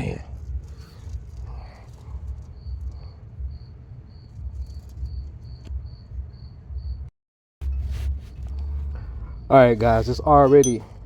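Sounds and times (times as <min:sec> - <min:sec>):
cricket chirping: 0:00.4 - 0:07.1.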